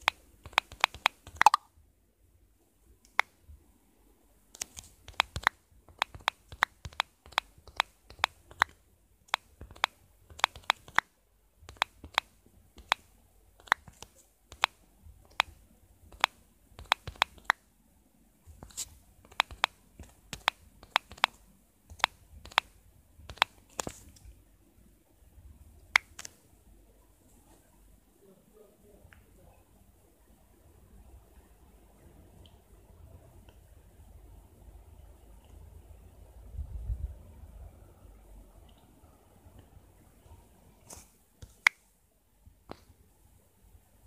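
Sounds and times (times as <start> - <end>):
phone keyboard typing clicks: 0.0 - 1.7, 4.5 - 11.1, 11.7 - 17.6, 18.6 - 22.7, 23.3 - 24.0.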